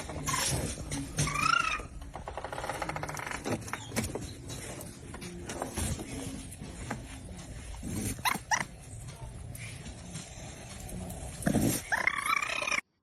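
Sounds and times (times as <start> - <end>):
dog whimpering and yipping: 8.1 - 8.8, 11.8 - 12.8.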